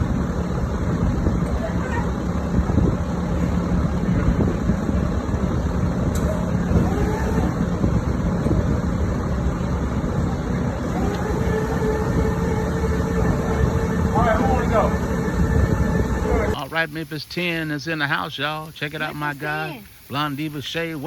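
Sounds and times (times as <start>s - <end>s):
steady low rumble: 0.0s - 21.0s
faint pitched sounds: 10.6s - 17.3s.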